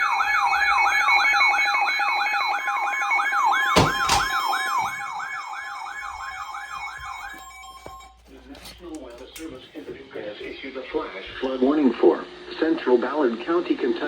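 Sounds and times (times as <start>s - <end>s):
electronic siren sweeping: 0.0s - 8.4s.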